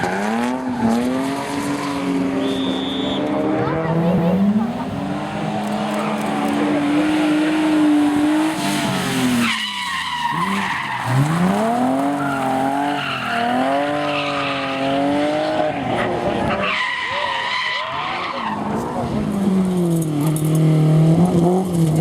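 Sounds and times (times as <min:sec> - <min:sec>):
car engine revving high: 0:00.0 - 0:17.5
tyres skidding: 0:04.2 - 0:20.7.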